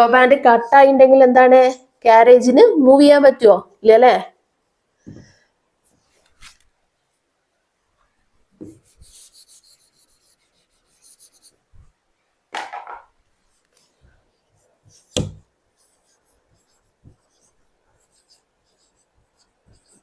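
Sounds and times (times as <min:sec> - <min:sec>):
pen scratching on paper: 0:08.6 - 0:11.6, 0:13.4 - 0:20.0
sharp knock: 0:15.2 - 0:15.4.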